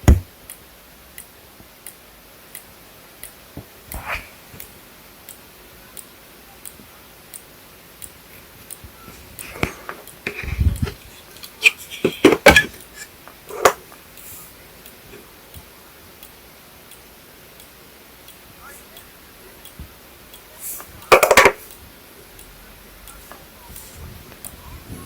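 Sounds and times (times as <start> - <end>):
knocks and rustles: 9.2 - 13.8.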